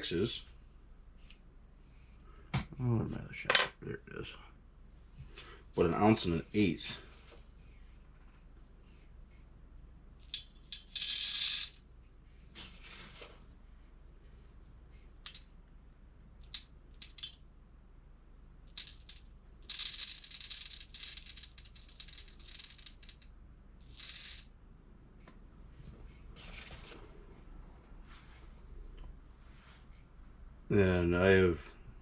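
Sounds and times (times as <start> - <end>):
lead shot pellets rattling: 10.2 - 11.8, 15.3 - 15.5, 16.4 - 17.4, 18.7 - 23.2, 23.8 - 24.5.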